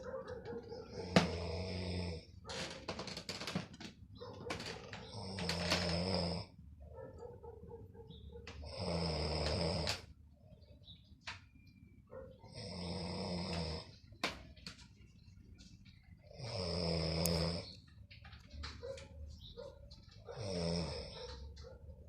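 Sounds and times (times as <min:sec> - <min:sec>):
loud snoring: 0:00.8 - 0:02.4, 0:05.0 - 0:06.5, 0:08.6 - 0:10.1, 0:12.5 - 0:14.0, 0:16.3 - 0:17.7, 0:20.3 - 0:21.2.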